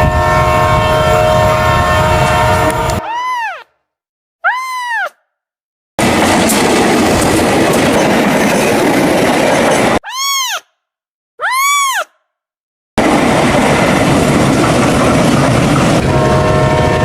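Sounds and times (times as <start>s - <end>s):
cat meowing: 3.0s - 3.6s
train rumbling past: 6.0s - 10.0s, 13.0s - 17.0s.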